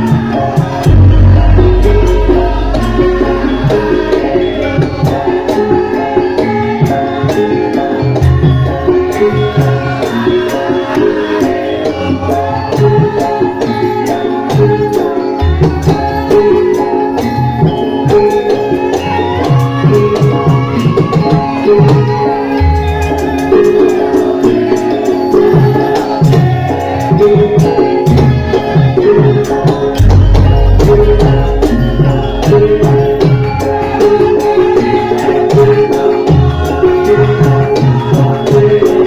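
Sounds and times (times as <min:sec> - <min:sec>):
metallophone melody: 0:00.0 - 0:07.3, 0:27.9 - 0:37.6
deep drum strokes: 0:00.8 - 0:05.0, 0:29.9 - 0:33.7.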